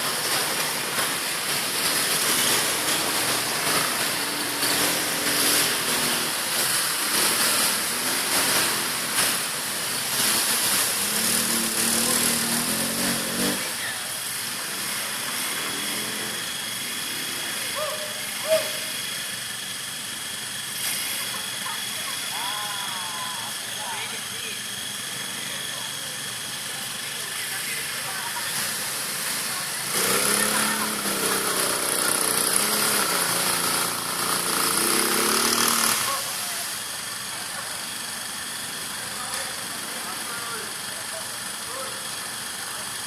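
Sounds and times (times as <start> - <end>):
atv engine revving: 0.0 - 43.0.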